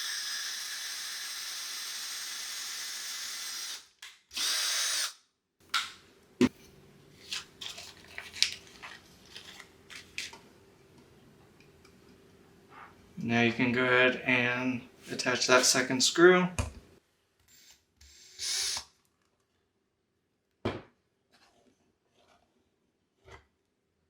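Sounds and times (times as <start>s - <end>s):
power drill boring: 0.0s - 5.2s, 17.6s - 18.8s.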